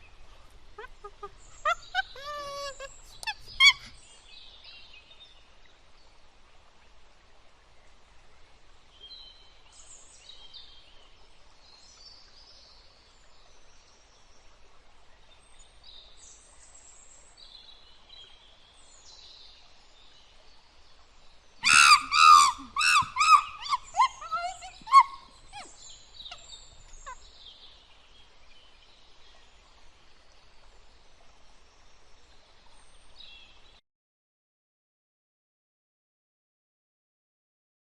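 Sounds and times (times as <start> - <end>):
rapid repeated bird calls: 0.0 - 4.1, 21.6 - 27.4
faint high bird chirps: 0.8 - 4.0, 21.6 - 27.3.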